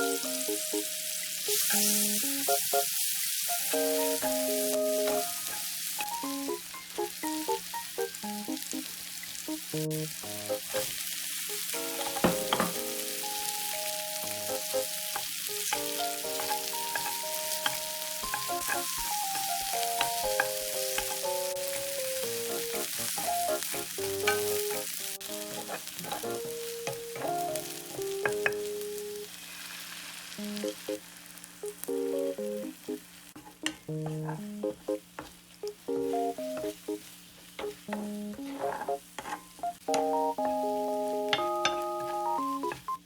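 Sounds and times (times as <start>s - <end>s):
food sizzling in a pan: 0.0s - 43.0s
utensil clicking in a pan: 15.1s - 21.8s
background music: 39.6s - 43.0s.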